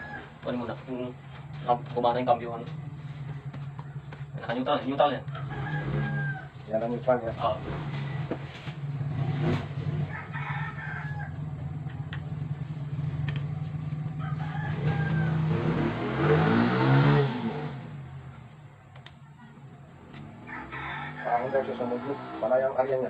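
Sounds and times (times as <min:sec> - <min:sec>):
rooster crowing: 0:00.0 - 0:00.5, 0:05.2 - 0:06.6, 0:10.0 - 0:11.6, 0:14.1 - 0:15.8, 0:20.3 - 0:23.0.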